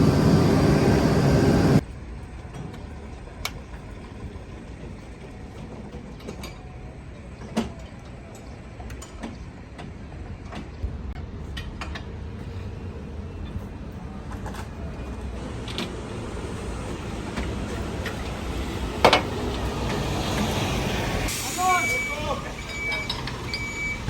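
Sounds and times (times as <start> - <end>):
diesel machinery engine running: 0.0 - 1.8
low rumble of machinery: 0.0 - 18.6.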